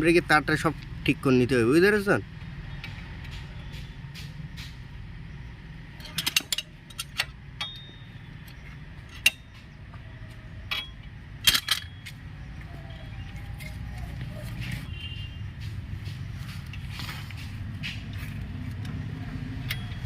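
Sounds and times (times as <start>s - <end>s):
metallic clinks of tools: 6.0s - 8.3s, 19.6s - 20.0s.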